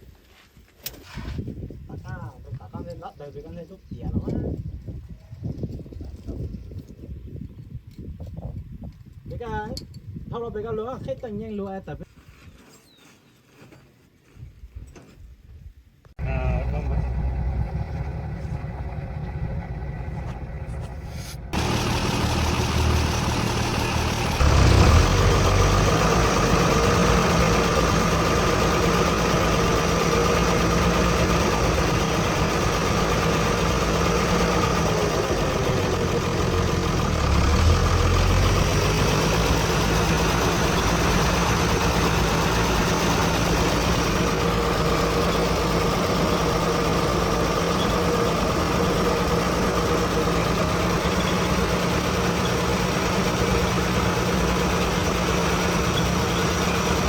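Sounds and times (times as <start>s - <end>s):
heavy diesel engine running: 16.2s - 57.0s.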